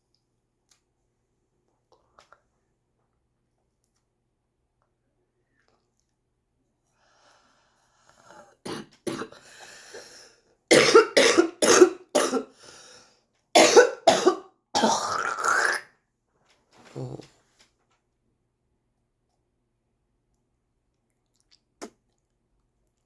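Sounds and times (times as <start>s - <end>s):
person coughing: 8.7s - 9.4s, 10.7s - 12.6s, 13.6s - 15.2s.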